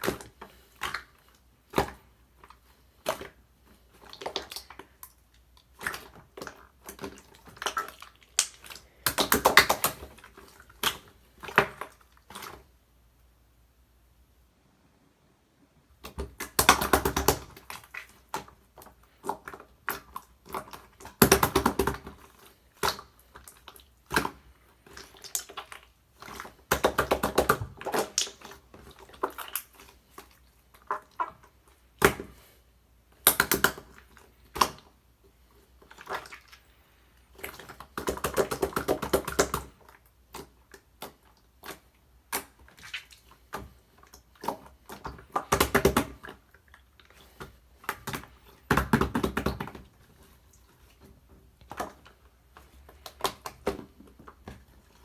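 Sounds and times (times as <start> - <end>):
slime clicking and popping: 5.7 - 10.2, 26.6 - 28.6.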